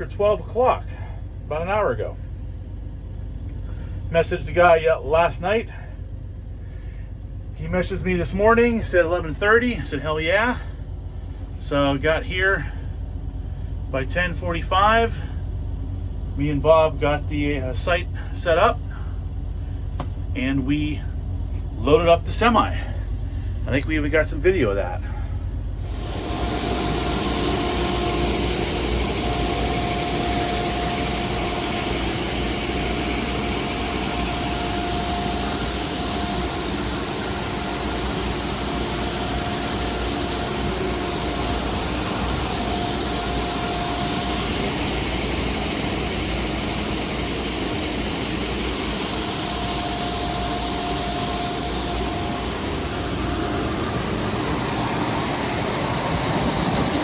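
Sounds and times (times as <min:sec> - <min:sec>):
faint whine: 0:00.0 - 0:57.0
heavy engine running: 0:00.0 - 0:57.0
steady hiss: 0:25.8 - 0:57.0.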